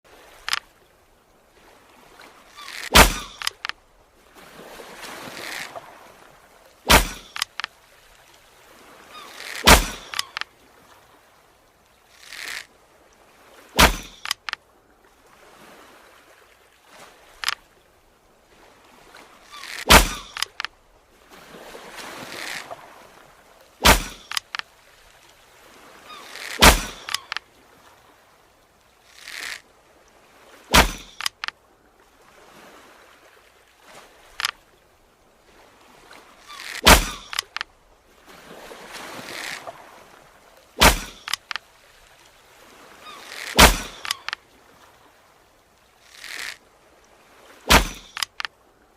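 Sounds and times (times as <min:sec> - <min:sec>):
faint clicks: 0:00.4 - 0:00.8, 0:02.2 - 0:03.8, 0:06.9 - 0:08.4, 0:09.3 - 0:10.5, 0:12.1 - 0:12.7, 0:13.8 - 0:14.6, 0:17.4 - 0:17.7, 0:19.4 - 0:20.8, 0:23.8 - 0:25.4, 0:26.2 - 0:27.5, 0:29.1 - 0:29.6, 0:30.8 - 0:31.6, 0:34.3 - 0:34.6, 0:36.1 - 0:37.7, 0:40.8 - 0:42.4, 0:43.2 - 0:44.4, 0:46.0 - 0:46.6, 0:47.8 - 0:48.6.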